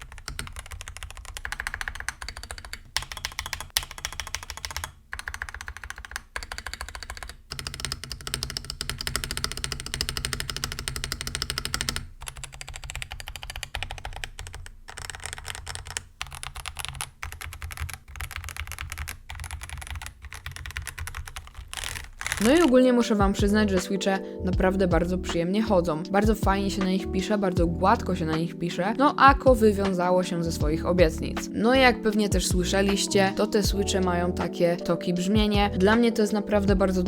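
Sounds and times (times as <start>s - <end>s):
typing on mechanical keyboard: 0.0s - 24.0s.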